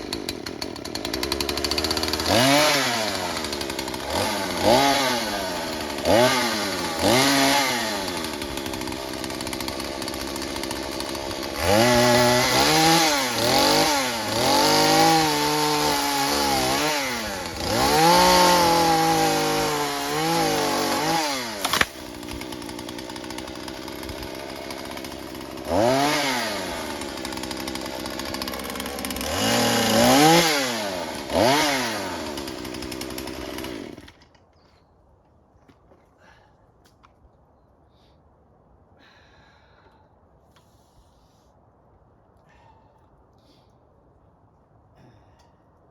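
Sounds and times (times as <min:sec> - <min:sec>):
chainsaw revving and cutting wood: 0:00.0 - 0:34.4
wood cracking: 0:07.0 - 0:30.5.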